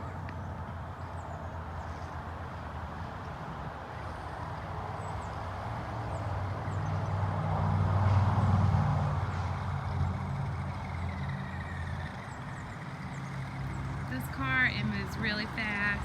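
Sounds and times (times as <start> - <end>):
vehicle engine passing: 0.0 - 16.0.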